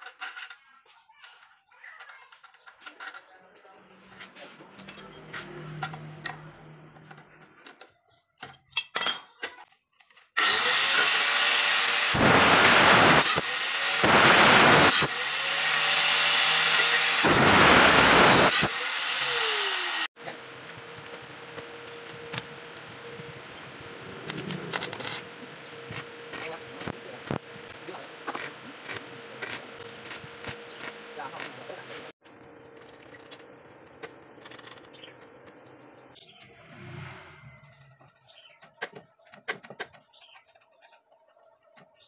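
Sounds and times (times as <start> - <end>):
power tool motor running: 10.4 - 20.2.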